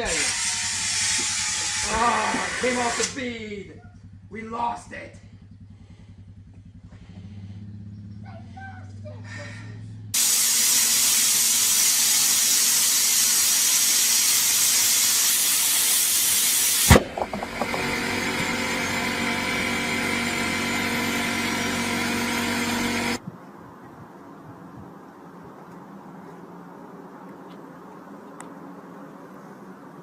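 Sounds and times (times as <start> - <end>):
compressed air hissing into tire: 0.0 - 3.2, 10.2 - 23.2
tire bead sharp bang: 10.2 - 20.8
steady hum: 14.5 - 23.2.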